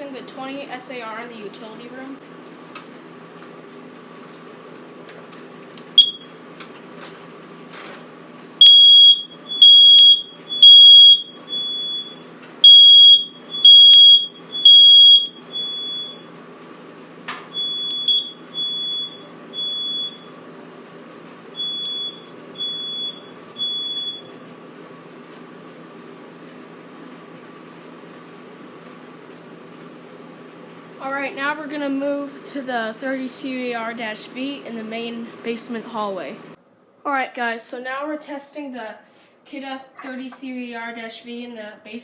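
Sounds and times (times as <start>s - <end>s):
smoke alarm beeps: 6.0s - 6.4s, 8.6s - 16.3s, 17.5s - 20.4s, 21.5s - 24.4s.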